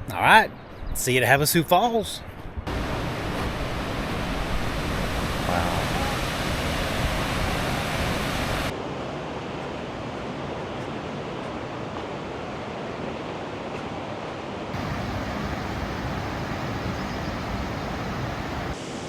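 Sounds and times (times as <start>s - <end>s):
flowing and falling water: 2.7s - 8.8s, 14.7s - 19.0s.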